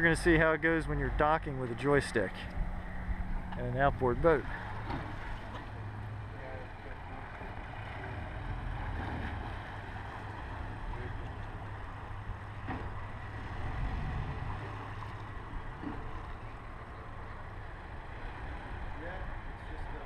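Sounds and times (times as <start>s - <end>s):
outboard motors rumbling: 0.0s - 20.0s
water noise: 0.0s - 20.0s
wind noise: 13.3s - 16.0s.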